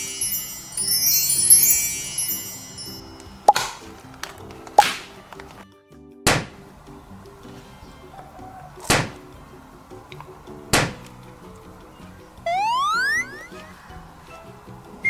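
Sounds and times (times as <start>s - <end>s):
faint background music: 0.0s - 15.0s
sharp thunks: 3.5s - 5.6s
rising cartoon boing: 12.5s - 13.6s.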